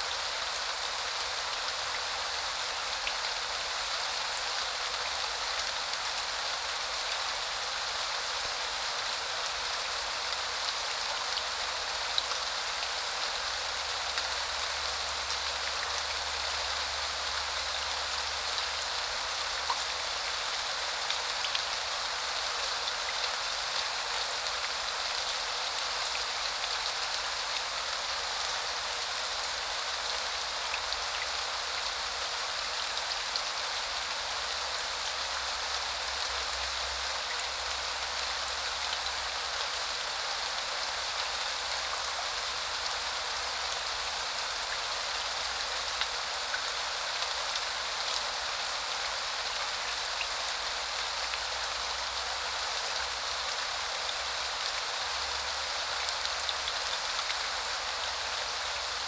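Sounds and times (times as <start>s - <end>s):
steady rain: 0.0s - 59.0s.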